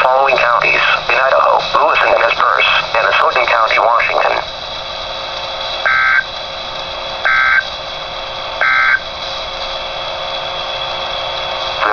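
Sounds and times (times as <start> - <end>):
radio background hiss: 0.0 - 11.9
digital warble bursts: 7.2 - 7.7, 8.6 - 9.0.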